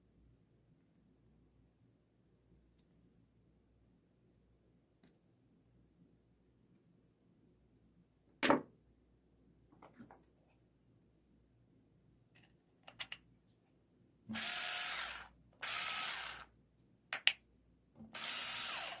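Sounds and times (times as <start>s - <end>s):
cordless drill running: 14.3s - 16.5s, 18.1s - 19.0s.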